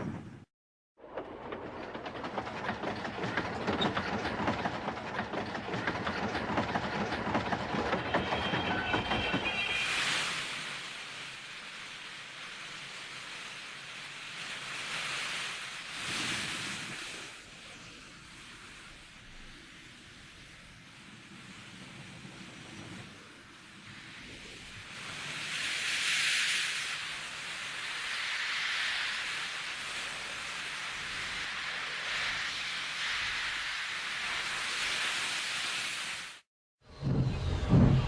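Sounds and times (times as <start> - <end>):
train wagons rattling over rails: 1.0 - 10.6, 36.9 - 38.0.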